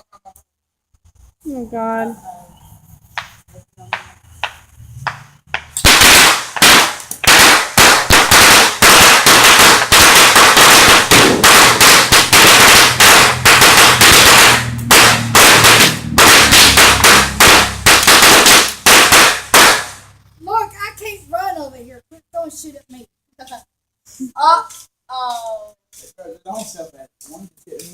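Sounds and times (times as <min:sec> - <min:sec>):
firecrackers going off: 0:03.0 - 0:20.6.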